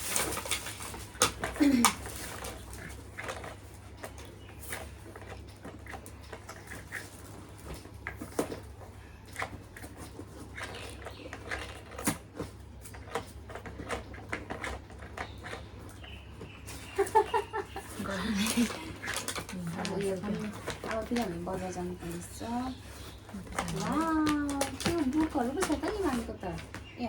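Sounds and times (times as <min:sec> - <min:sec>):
packaging clicks and taps: 0:23.0 - 0:26.9.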